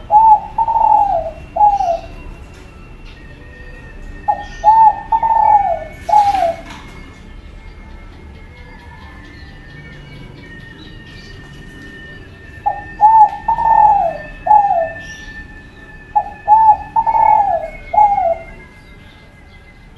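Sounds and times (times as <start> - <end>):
dove cooing: 0.0 - 19.0
faint high chirping: 0.0 - 19.9.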